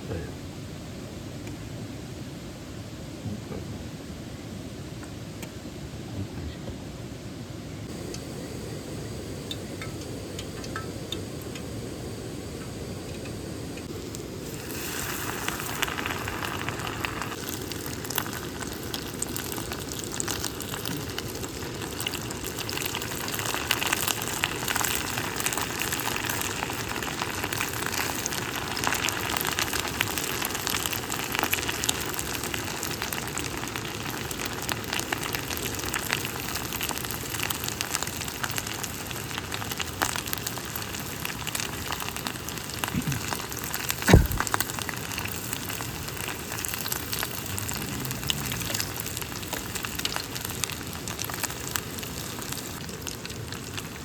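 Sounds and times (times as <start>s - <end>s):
food sizzling in a pan: 7.9s - 54.0s.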